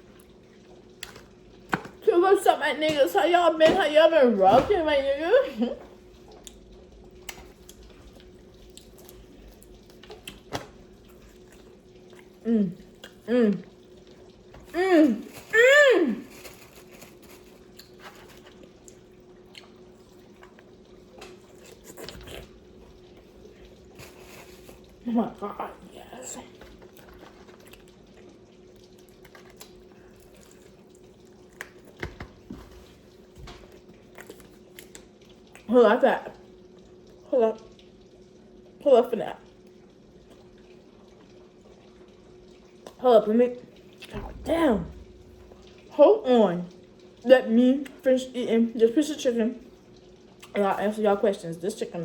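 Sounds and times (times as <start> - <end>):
faint steady hum: 0.0 - 52.0
person eating: 5.8 - 25.0, 26.5 - 28.3, 28.9 - 33.1, 34.0 - 35.6
person chewing with mouth smacks: 7.2 - 13.6, 16.4 - 25.0, 26.6 - 33.0, 33.6 - 35.7.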